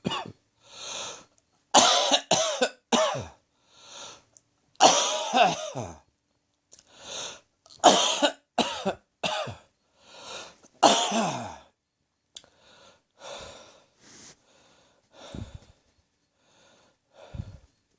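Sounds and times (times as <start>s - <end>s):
hard voiced coughs: 0.0s - 0.4s, 1.8s - 3.4s, 4.8s - 6.0s, 7.8s - 9.6s, 10.8s - 11.6s.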